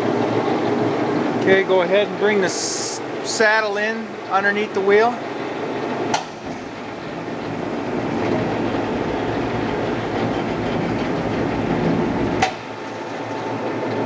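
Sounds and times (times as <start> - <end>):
surface grinder running: 6.4 - 14.0.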